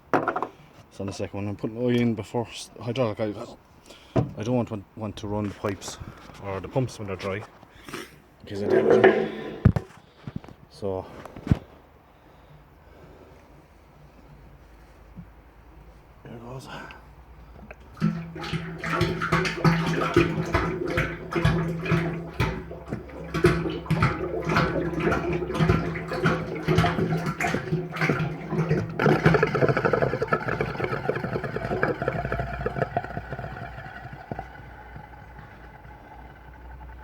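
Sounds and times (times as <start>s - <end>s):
oil pouring from a drum: 17.6s - 37.0s.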